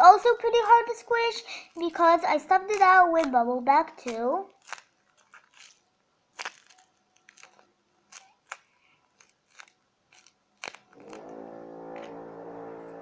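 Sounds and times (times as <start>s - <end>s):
paper and plastic crinkling: 1.2s - 11.3s.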